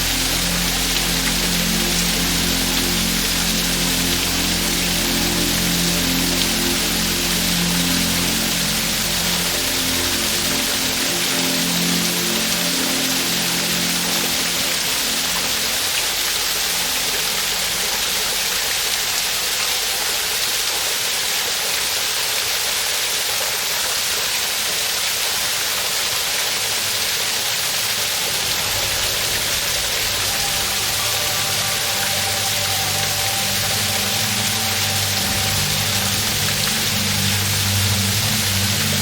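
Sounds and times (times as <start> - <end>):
soft background music: 0.0 - 20.5, 26.7 - 39.0
waterfall pouring: 0.0 - 39.0.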